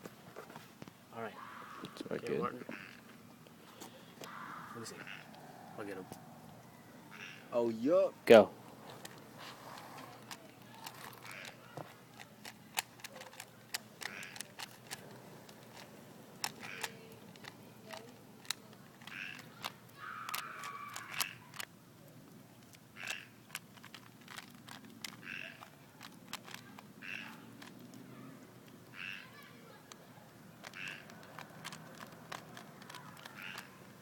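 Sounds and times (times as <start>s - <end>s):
faint short calls: 3.6s - 7.6s
puzzle cube clicking: 10.1s - 21.7s, 22.5s - 33.8s.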